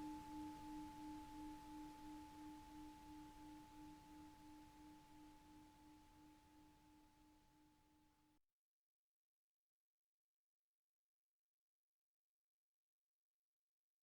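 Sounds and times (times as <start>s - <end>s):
singing bowl ringing: 0.0s - 6.9s.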